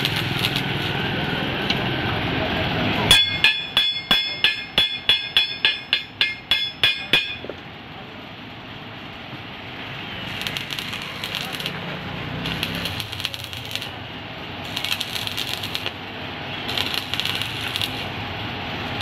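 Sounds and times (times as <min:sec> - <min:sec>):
workshop hum: 0:00.0 - 0:19.0
hammer striking metal: 0:03.1 - 0:07.6.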